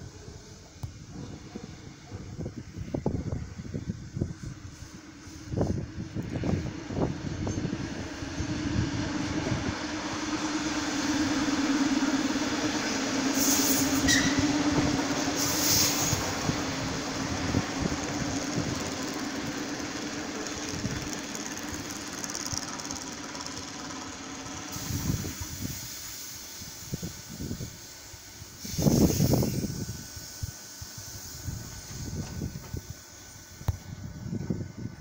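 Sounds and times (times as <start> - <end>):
train humming: 0.0 - 35.0
short high hisses: 13.0 - 17.2, 24.7 - 33.6
train wheels knocking over rails: 13.7 - 25.5.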